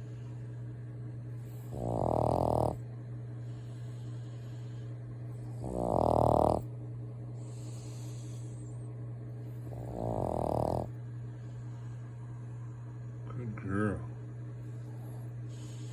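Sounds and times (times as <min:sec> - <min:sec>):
steady low hum: 0:00.0 - 0:15.9
woman snoring: 0:01.7 - 0:02.8, 0:05.5 - 0:06.7, 0:09.6 - 0:11.0.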